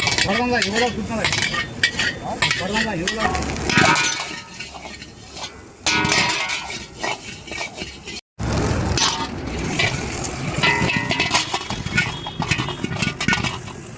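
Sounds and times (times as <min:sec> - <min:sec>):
metal spatula scraping a pan: 0:00.0 - 0:08.2, 0:09.0 - 0:13.9
food sizzling: 0:00.0 - 0:13.9.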